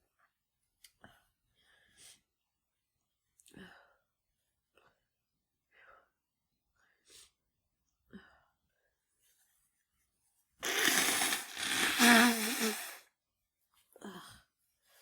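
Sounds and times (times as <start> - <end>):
woman sneezing: 10.6 - 13.0.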